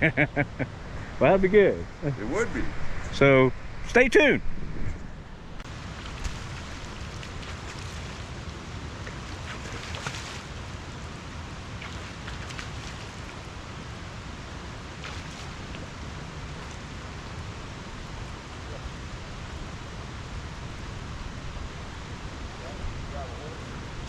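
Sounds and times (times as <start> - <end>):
wind buffeting microphone: 0.0 - 10.4.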